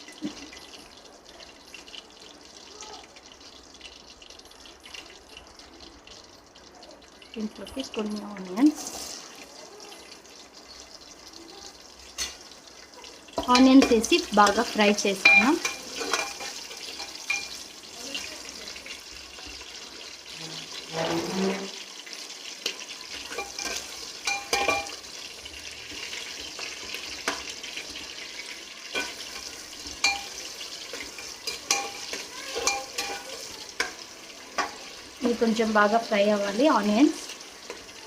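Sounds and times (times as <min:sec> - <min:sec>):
onions sizzling in oil: 0:00.0 - 0:38.0
spatula scraping pan: 0:13.3 - 0:17.6, 0:19.1 - 0:21.9, 0:22.6 - 0:25.1, 0:25.7 - 0:35.4.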